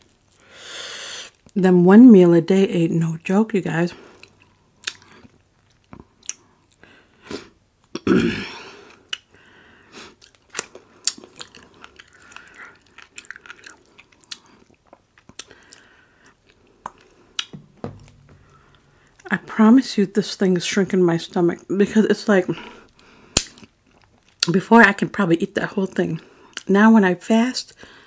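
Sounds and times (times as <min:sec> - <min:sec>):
person chewing food: 0:04.1 - 0:06.8, 0:10.2 - 0:17.6.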